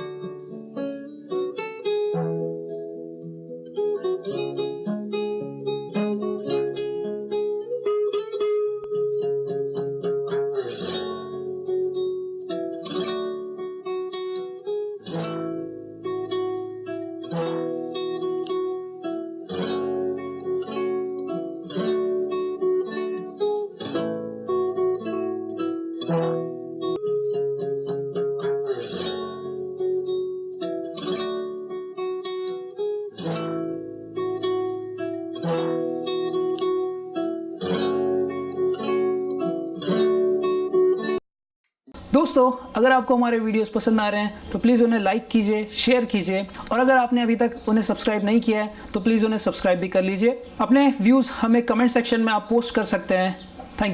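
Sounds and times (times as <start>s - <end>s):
guitar picked single notes: 0.0s - 41.2s
guitar strummed chords: 0.0s - 41.2s.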